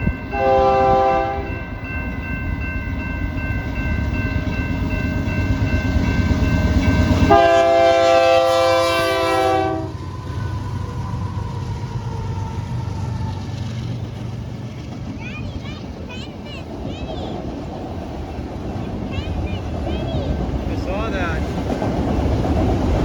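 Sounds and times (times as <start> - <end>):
diesel locomotives rumbling: 0.0 - 23.0
locomotive air horn blast: 0.3 - 1.6, 7.3 - 11.3.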